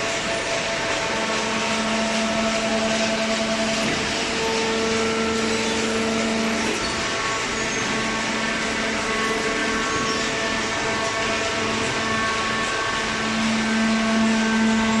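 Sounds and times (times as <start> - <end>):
machinery humming: 0.0 - 15.0.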